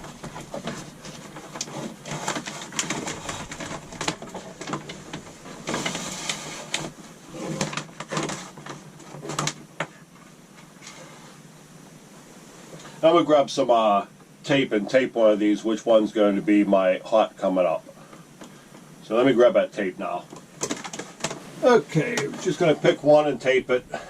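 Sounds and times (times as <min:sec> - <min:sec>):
wire clicking and knocking: 0:00.0 - 0:10.0, 0:20.3 - 0:21.4
wire scraping through a hole: 0:05.0 - 0:08.6.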